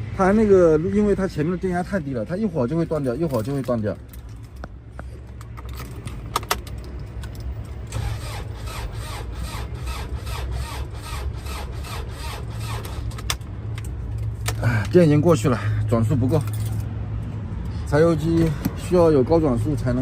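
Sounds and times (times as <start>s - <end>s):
starter motor slowly cranking engine: 7.9s - 13.2s.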